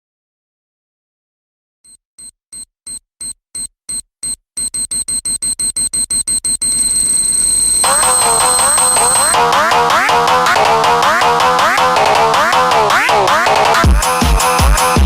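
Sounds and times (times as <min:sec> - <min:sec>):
high electronic pulse: 0:06.4 - 0:10.0.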